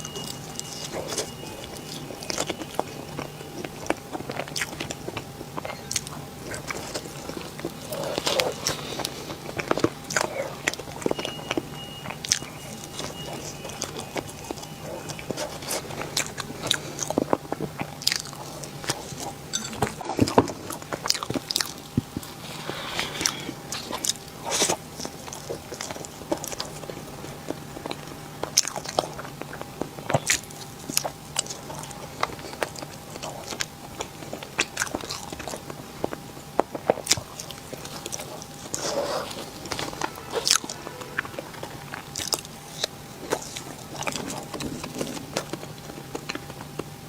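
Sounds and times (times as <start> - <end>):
person biting and chewing cake: 0.0 - 47.0.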